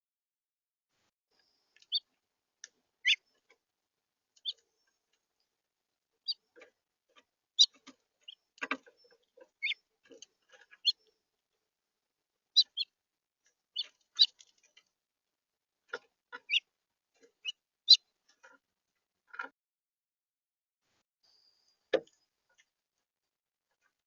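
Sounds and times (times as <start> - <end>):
finches chirping: 7.6 - 9.8, 12.6 - 12.9, 16.4 - 16.6.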